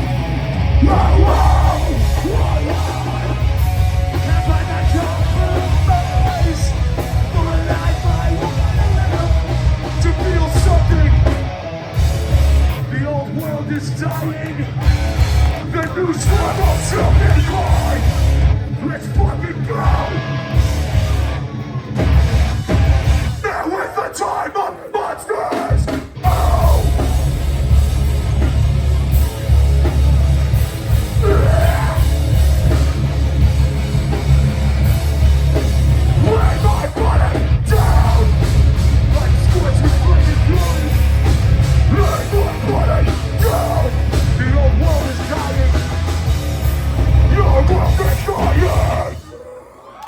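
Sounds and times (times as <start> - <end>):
booming bass: 0.0 - 12.8, 14.8 - 19.3, 19.9 - 21.4, 22.0 - 23.4, 26.2 - 49.1
pounding drums: 0.0 - 12.8, 14.8 - 23.7, 25.5 - 49.2
distorted guitars: 0.0 - 50.0
person shouting vocals: 0.8 - 3.4, 23.4 - 27.0, 31.2 - 32.1, 36.2 - 38.4.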